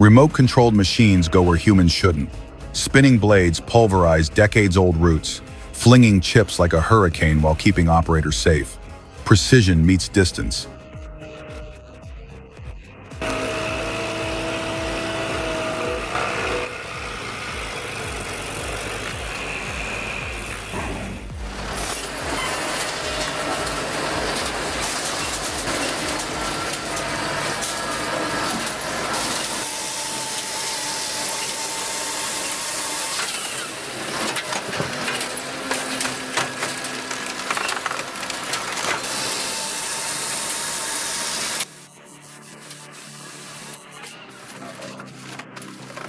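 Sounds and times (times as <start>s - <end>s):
wood-processing machine engine: 0.0s - 10.8s, 13.1s - 46.0s
wood being ground and crushed: 13.2s - 46.0s.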